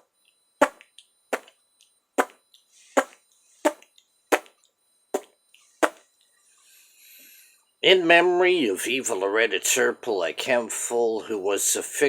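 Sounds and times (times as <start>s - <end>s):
sharp knocks: 0.6s - 0.8s, 3.0s - 4.5s, 5.2s - 6.0s.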